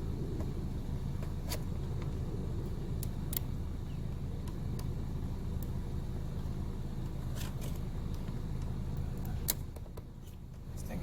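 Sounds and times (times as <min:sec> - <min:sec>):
car engine idling: 0:00.0 - 0:11.0.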